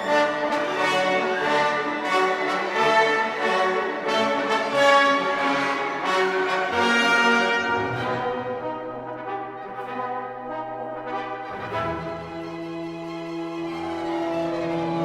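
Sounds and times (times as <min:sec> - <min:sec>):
orchestral brass melody: 0:00.0 - 0:15.0.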